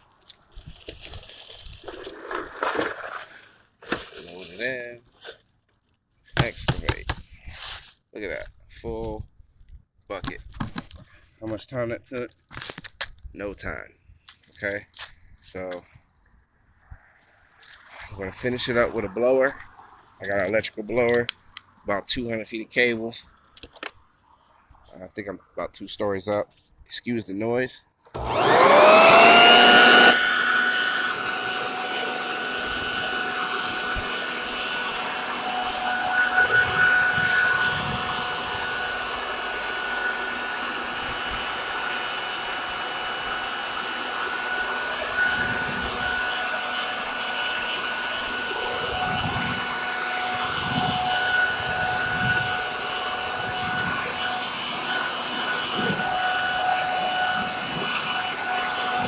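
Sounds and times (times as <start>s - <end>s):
leaf blower whining: 0.6s - 5.0s, 28.1s - 59.0s.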